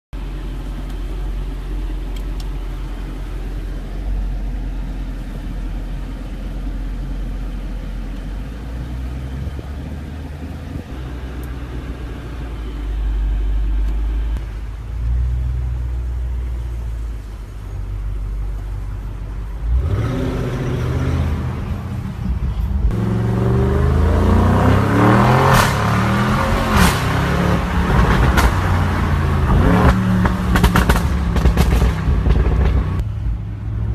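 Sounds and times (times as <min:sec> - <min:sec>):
car engine rumbling and revving: 0:00.2 - 0:33.9
exhaust pops and crackles: 0:26.6 - 0:33.0.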